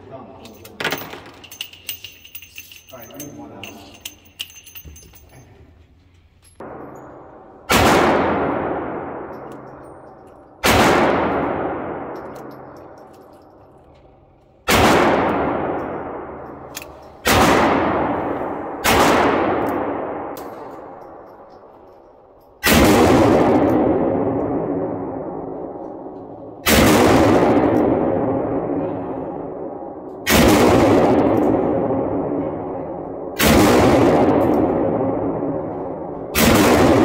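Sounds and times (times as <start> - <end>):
handgun shots with echo: 33.4 - 37.0.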